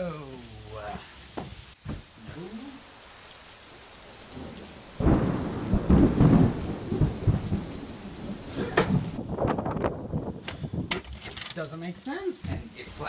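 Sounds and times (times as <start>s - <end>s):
steady rain: 0.0s - 10.9s, 12.0s - 13.0s
thunder clap and rumble: 3.9s - 10.9s.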